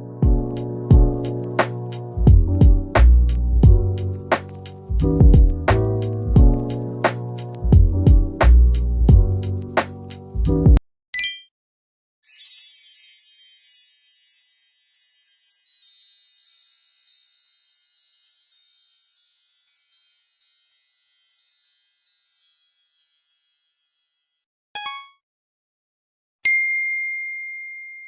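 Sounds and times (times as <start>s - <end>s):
metal chimes tinkling: 12.2s - 25.1s.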